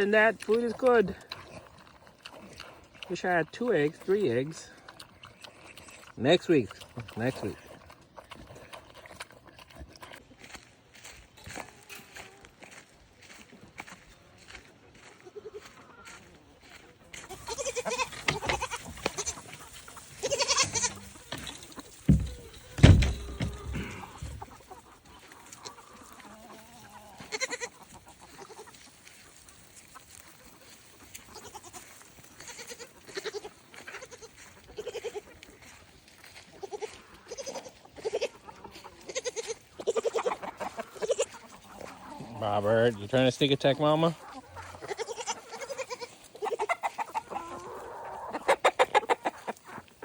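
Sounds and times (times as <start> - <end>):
goats bleating: 17.1 - 29.2, 30.6 - 42.4, 44.4 - 48.3.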